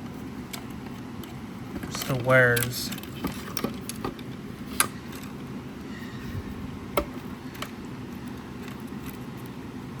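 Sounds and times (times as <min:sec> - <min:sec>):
plastic speaker parts clicking: 0:00.5 - 0:05.3.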